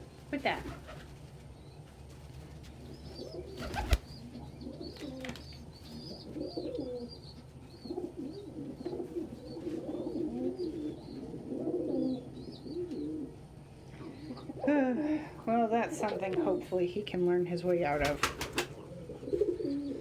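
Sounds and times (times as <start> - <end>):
pigeon cooing: 3.0 - 15.4, 18.1 - 20.0.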